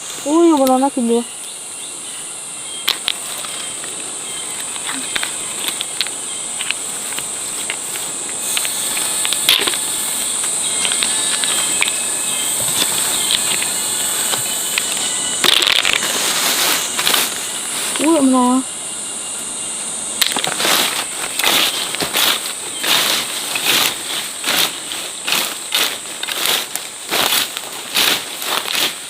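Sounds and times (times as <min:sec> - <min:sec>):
insects droning: 0:00.0 - 0:29.0
rustling scrape: 0:04.9 - 0:18.5.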